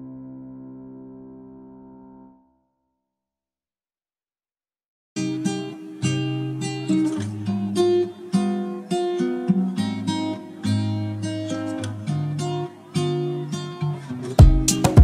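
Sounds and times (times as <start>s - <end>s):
acoustic guitar plucked notes: 5.2s - 15.0s.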